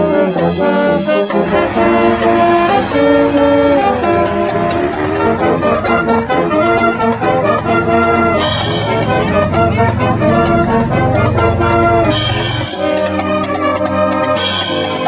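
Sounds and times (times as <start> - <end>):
brass-led music with beat: 0.0 - 15.0
bright cymbal crash: 1.3 - 13.3.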